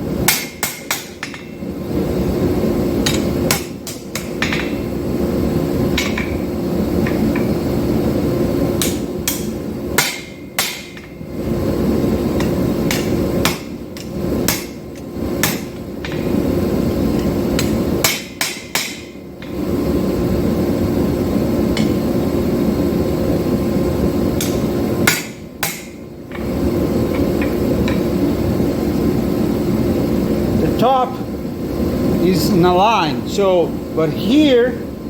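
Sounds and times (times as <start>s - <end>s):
hammer striking metal on anvil: 0.2s - 1.6s, 3.0s - 4.8s, 6.0s - 6.4s, 8.8s - 11.2s, 12.4s - 14.8s, 15.4s - 16.3s, 17.6s - 19.2s, 24.4s - 26.0s.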